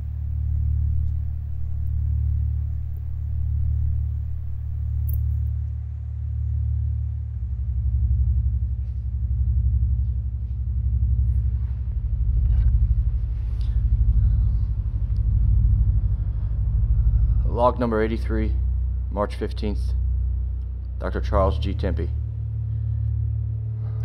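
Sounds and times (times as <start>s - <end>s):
low rumbling pulsing drone: 0.0s - 24.0s
faint clicks: 0.7s - 5.6s.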